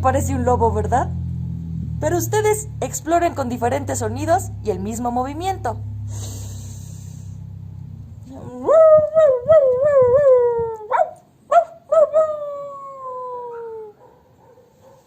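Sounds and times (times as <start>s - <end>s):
woman yelping: 8.3s - 12.5s
woman imitating dog howling: 8.3s - 14.0s.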